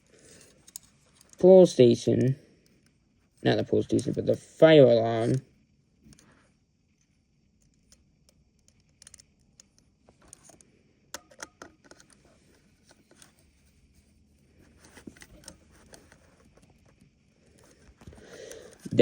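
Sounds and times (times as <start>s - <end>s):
faint clicks and scratches of wire: 0.0s - 4.4s, 6.0s - 19.0s.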